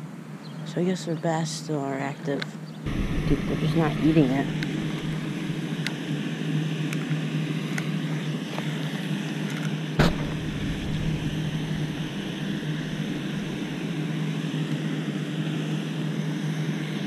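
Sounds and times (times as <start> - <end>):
low mechanical hum: 0.0 - 17.0
sharp knock: 10.0 - 13.4.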